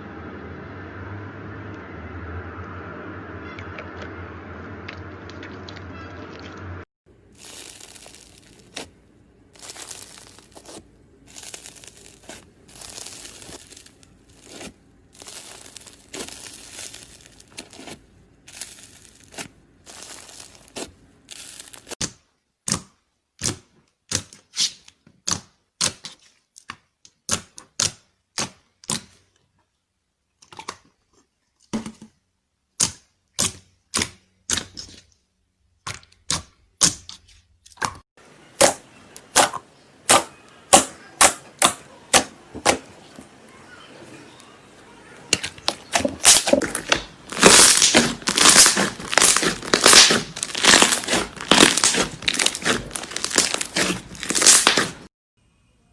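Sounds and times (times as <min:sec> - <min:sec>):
slime crackling and tearing: 0:07.2 - 0:22.0, 0:45.3 - 0:55.1.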